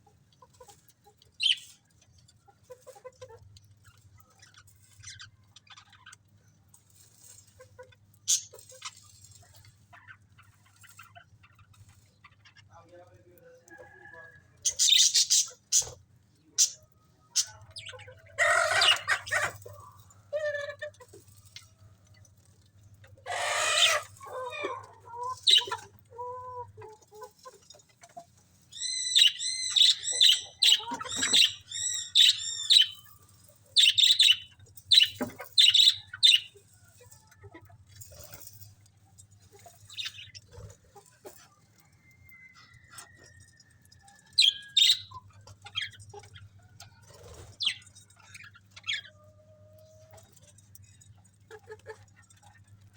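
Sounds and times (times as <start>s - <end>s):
budgerigars chirping: 25.5s - 25.8s, 28.8s - 33.1s, 33.8s - 36.5s, 44.4s - 45.2s.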